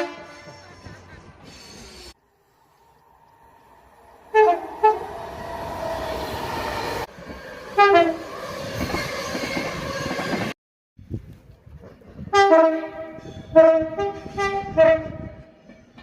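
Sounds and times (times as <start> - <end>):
train horn blasts: 0.0 - 0.9, 4.2 - 5.2, 7.7 - 8.3, 12.3 - 15.5
train rumbling past: 0.0 - 10.6.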